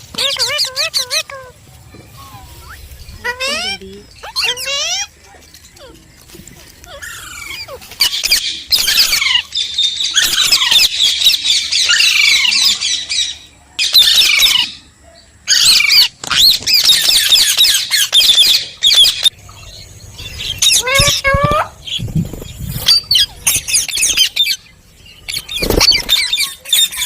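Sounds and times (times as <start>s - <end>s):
parrot squawking and chattering: 0.0s - 5.2s, 6.8s - 13.0s, 20.2s - 22.0s, 25.3s - 27.0s.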